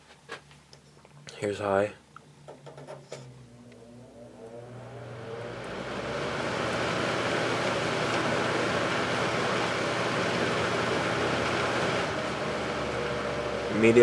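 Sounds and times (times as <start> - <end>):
low motor hum: 3.0 - 14.0
box fan rushing air: 3.1 - 14.0.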